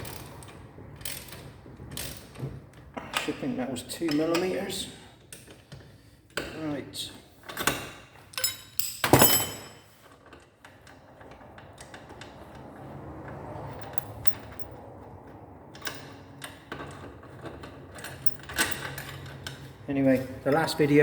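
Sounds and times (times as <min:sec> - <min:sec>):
washers and tools clattering: 0:07.4 - 0:12.7, 0:15.8 - 0:19.9
light metal clicks and knocks: 0:07.4 - 0:21.0.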